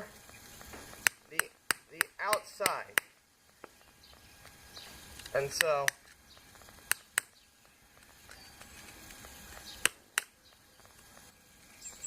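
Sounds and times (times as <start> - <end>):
metal awl tapping rock: 1.0 - 3.1.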